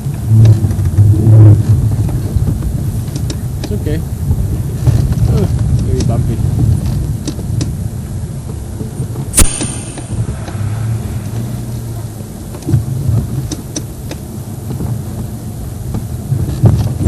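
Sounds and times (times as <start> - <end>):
vehicle engine hum: 0.0 - 17.0
sharp metal clank: 9.4 - 11.0.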